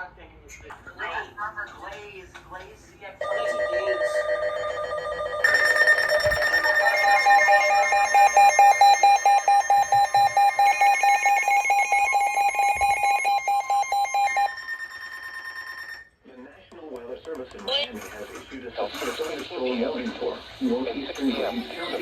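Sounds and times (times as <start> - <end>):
high alarm tone: 3.2 - 16.1
steady lower alarm tone: 3.2 - 16.1
fast electronic beeping: 5.4 - 15.2.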